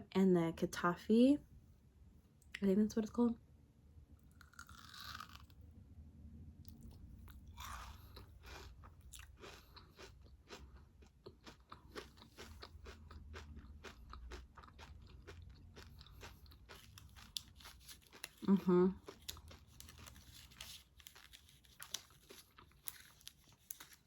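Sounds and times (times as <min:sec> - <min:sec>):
chewing cookie close-up: 0:04.2 - 0:05.6, 0:06.6 - 0:24.0
biting and crunching: 0:04.3 - 0:05.6, 0:06.7 - 0:24.0.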